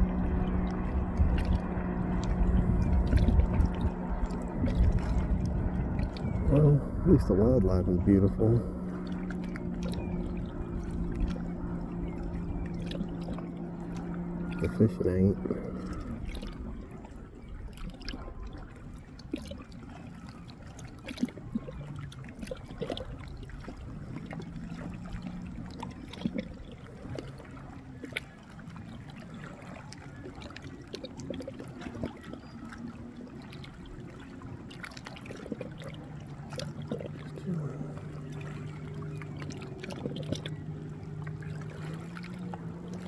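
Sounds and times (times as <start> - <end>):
river water trickling and lapping: 0.0 - 43.0.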